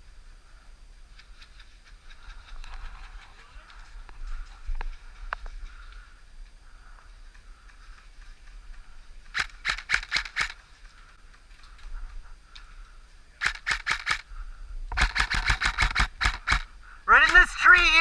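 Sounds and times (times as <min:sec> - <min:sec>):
airsoft guns firing: 0:09.3 - 0:10.6, 0:13.4 - 0:14.2, 0:14.9 - 0:18.0.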